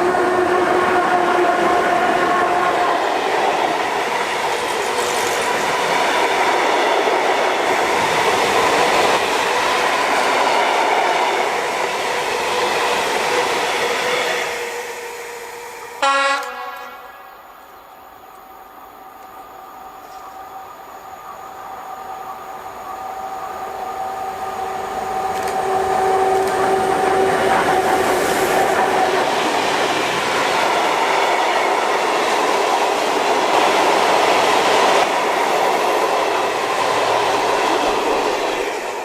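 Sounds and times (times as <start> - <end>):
freight train rumbling clatter: 0.0 - 14.8, 24.8 - 39.0
train horn blast: 16.0 - 17.6.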